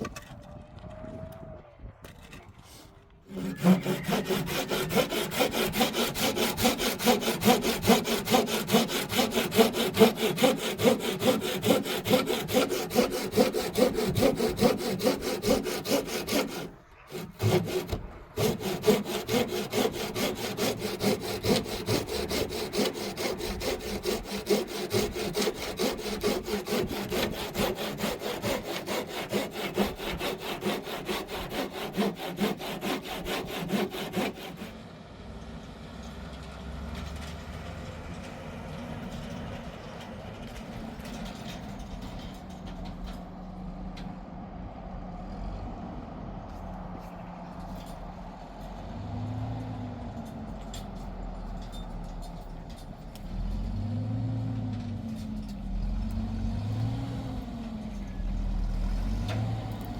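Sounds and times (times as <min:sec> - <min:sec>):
hand saw cutting wood: 0:02.7 - 0:34.8, 0:58.7 - 0:59.9.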